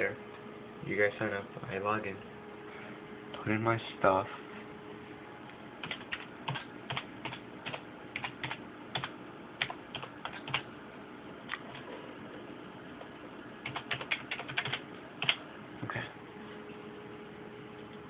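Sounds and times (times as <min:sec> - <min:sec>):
typing on computer keyboard: 0:05.8 - 0:10.7, 0:13.6 - 0:15.4.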